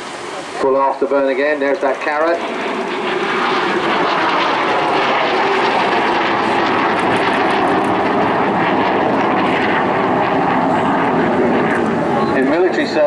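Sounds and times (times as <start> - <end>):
jet fighter on afterburner: 0.0 - 13.0.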